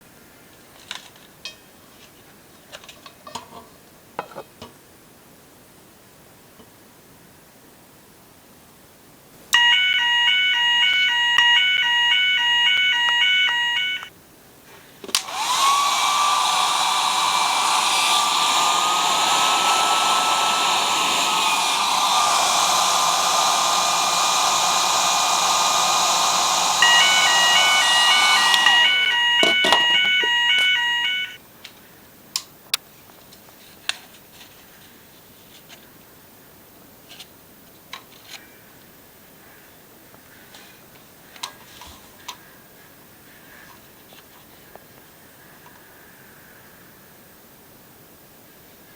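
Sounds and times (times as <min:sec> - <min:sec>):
electronic alarm beeping: 0:09.6 - 0:14.1, 0:26.8 - 0:31.4
hair dryer blowing: 0:15.2 - 0:31.4
clicks: 0:26.8 - 0:31.4.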